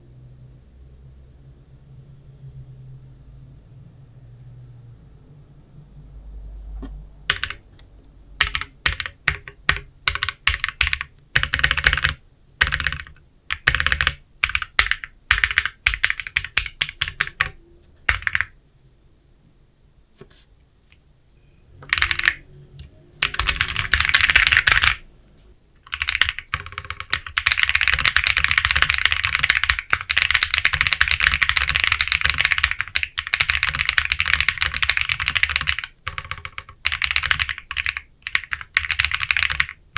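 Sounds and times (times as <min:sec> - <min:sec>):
mechanical keyboard typing: 0:06.8 - 0:18.6, 0:21.8 - 0:22.4, 0:23.2 - 0:25.0, 0:25.8 - 0:39.9.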